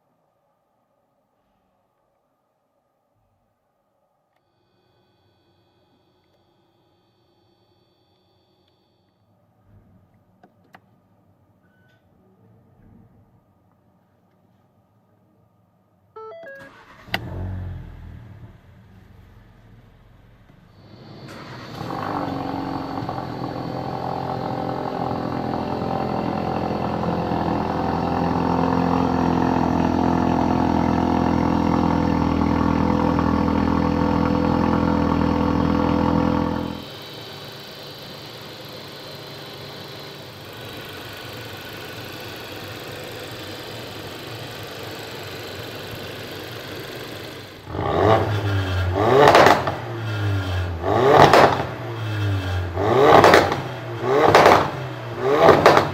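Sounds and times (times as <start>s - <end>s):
car engine running and revving: 16.4s - 55.9s.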